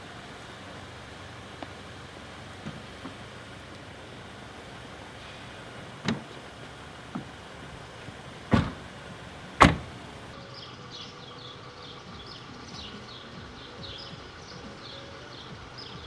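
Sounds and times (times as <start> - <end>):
thumps: 8.4 - 10.3.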